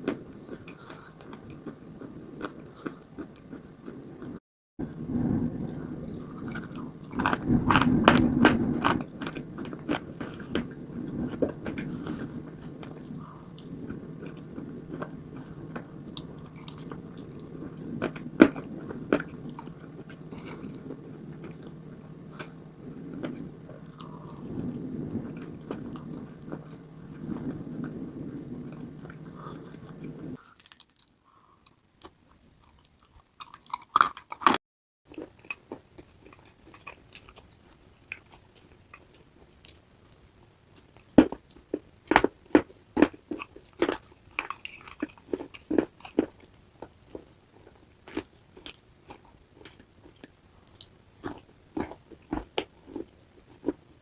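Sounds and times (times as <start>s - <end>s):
wet mashing chewing: 0.0s - 4.3s, 5.6s - 54.0s.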